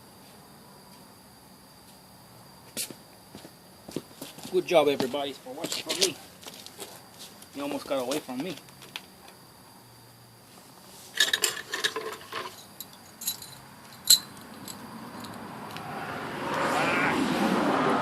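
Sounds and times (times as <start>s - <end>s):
light metal clinks: 11.2s - 15.4s.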